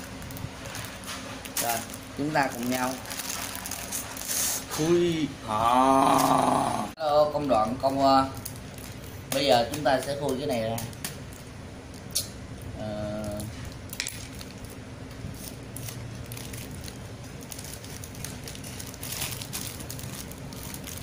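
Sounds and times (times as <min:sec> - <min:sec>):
packaging being torn: 0:00.0 - 0:04.6, 0:13.2 - 0:21.0.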